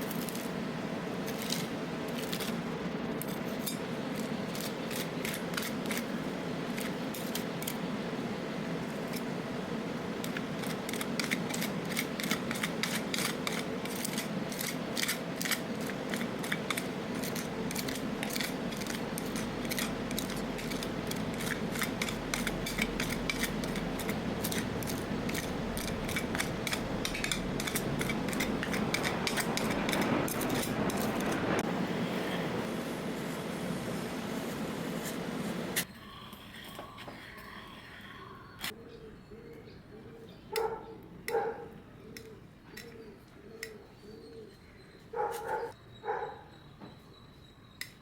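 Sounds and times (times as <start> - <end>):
steady low hum: 0.0 - 40.6
metal spatulas scraping steel plate: 10.6 - 31.6.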